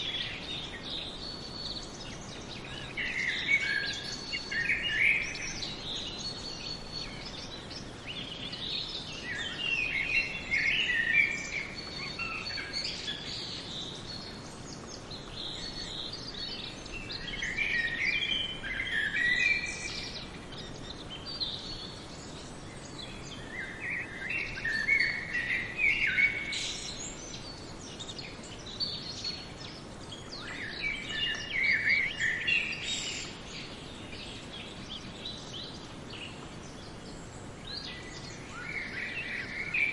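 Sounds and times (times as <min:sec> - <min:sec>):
songbirds chirping and trilling: 0:00.0 - 0:39.9
steady background hiss: 0:00.0 - 0:39.9.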